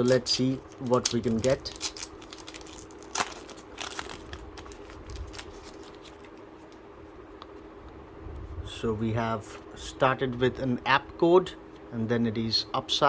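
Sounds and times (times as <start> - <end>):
foil wrapper tearing: 0.0 - 6.3
wrapper crinkling: 0.0 - 6.4.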